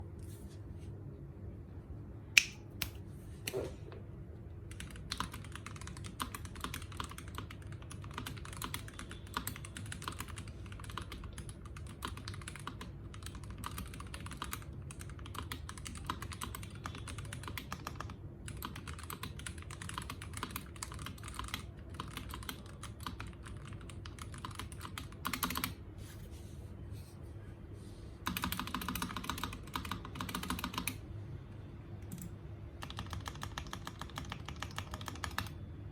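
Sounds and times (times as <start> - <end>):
low background hum: 0.0 - 35.9
mechanical keyboard typing: 4.7 - 25.8, 28.2 - 31.0, 32.0 - 35.6.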